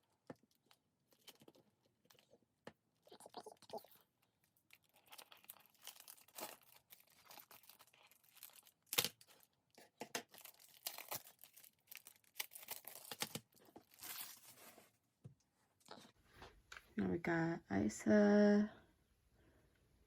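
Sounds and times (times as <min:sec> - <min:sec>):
plastic shrink-wrap tearing and crinkling: 0:04.6 - 0:09.6, 0:10.2 - 0:14.8.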